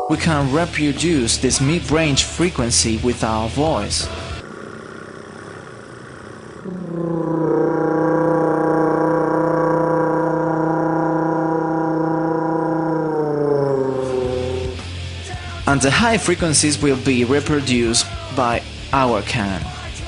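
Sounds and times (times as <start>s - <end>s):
person humming buzzy note: 6.6s - 14.9s.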